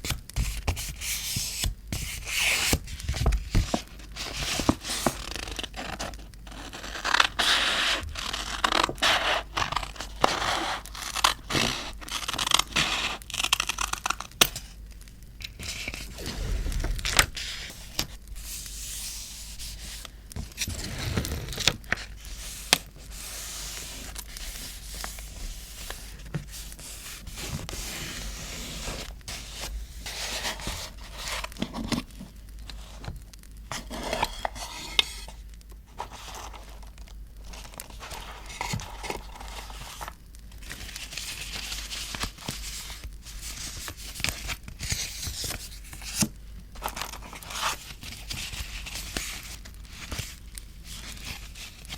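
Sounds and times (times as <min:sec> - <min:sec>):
paper tearing and crinkling: 0:04.2 - 0:14.5, 0:36.0 - 0:51.9.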